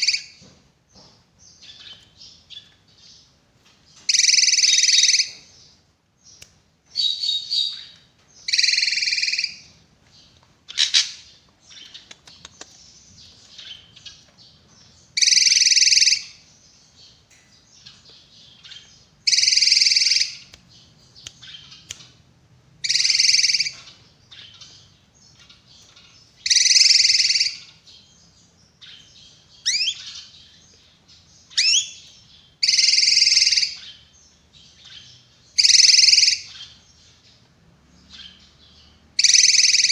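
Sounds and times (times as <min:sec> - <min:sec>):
bird twittering: 0:04.0 - 0:05.6, 0:06.3 - 0:09.8, 0:10.7 - 0:16.5, 0:17.8 - 0:22.2, 0:22.8 - 0:37.3, 0:38.0 - 0:39.9.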